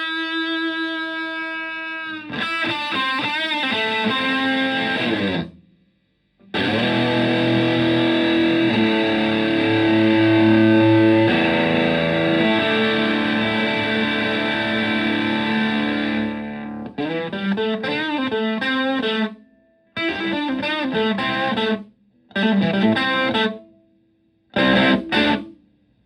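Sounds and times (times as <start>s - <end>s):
fuzz electric guitar: 0.0s - 5.6s, 6.4s - 19.4s, 20.0s - 23.7s, 24.5s - 25.6s.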